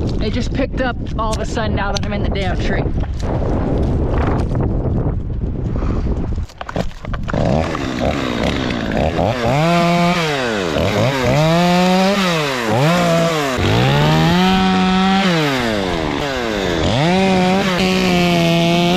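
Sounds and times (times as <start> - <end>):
wind buffeting microphone: 0.0 - 18.9
chainsaw revving: 7.2 - 18.9.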